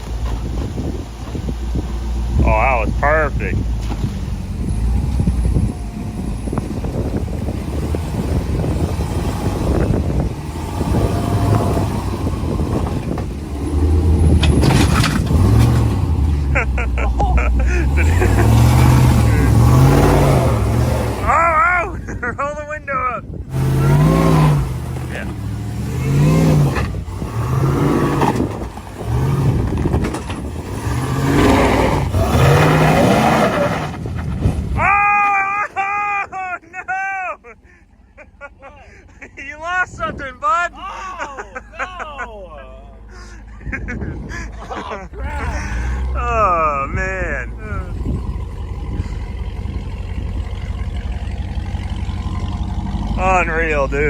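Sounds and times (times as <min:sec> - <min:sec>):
truck engine running: 0:00.0 - 0:54.0
rough rushing wash: 0:17.6 - 0:22.3, 0:30.4 - 0:37.0
tyres crunching over rough ground: 0:23.5 - 0:36.6.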